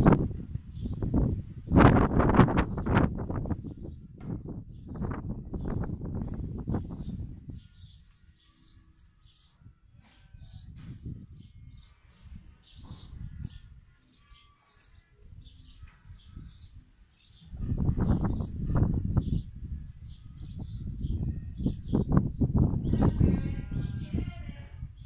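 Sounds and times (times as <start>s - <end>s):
small birds chirping: 0.7s - 4.1s, 4.7s - 25.0s.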